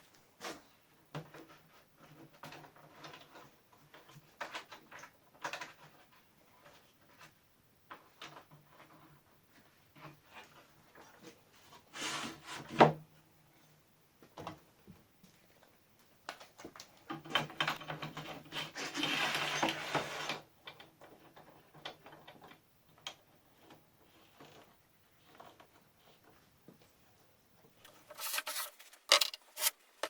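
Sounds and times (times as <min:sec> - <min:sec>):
wooden parts sliding and scraping: 0:27.8 - 0:30.0
clicks and knocks: 0:27.9 - 0:30.0
sliding rubbing: 0:27.9 - 0:30.0.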